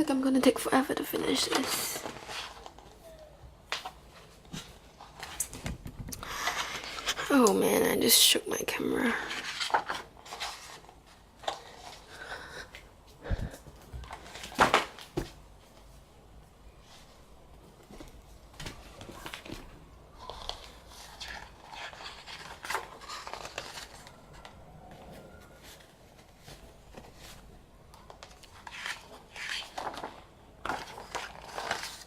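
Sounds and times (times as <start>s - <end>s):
paper pages rustling: 1.2s - 3.0s, 3.7s - 7.6s, 9.2s - 12.1s, 16.8s - 32.0s.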